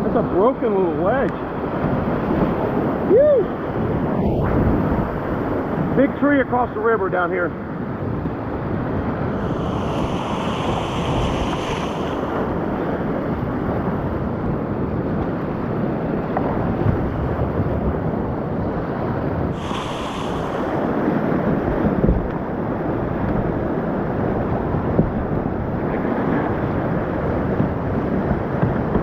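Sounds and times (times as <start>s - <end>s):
whitewater rushing: 9.1s - 14.4s, 19.6s - 23.1s
water splashing: 9.3s - 13.7s.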